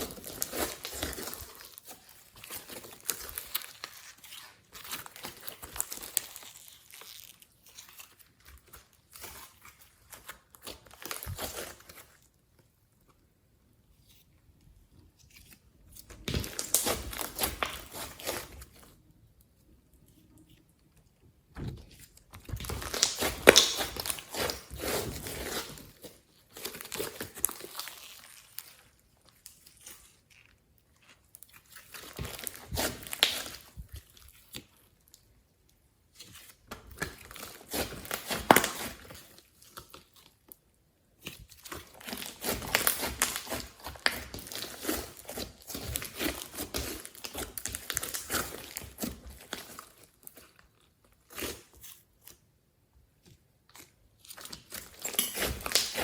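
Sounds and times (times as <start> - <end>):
slime squished by hand: 22.4 - 25.8.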